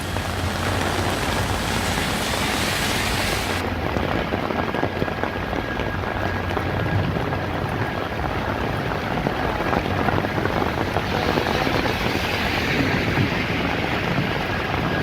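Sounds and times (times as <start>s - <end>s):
hiss: 0.0s - 3.6s
heavy rain pouring on street: 0.0s - 15.0s
low rumble of traffic: 0.0s - 15.0s.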